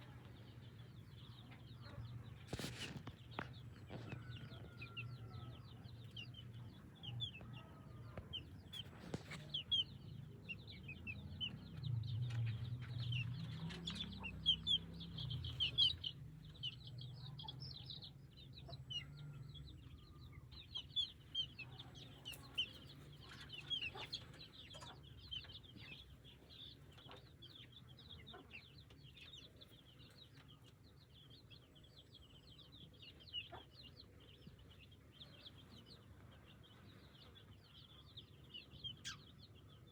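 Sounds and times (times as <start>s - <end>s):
chicks peeping: 0.0s - 39.9s
hen clucking: 20.6s - 26.2s.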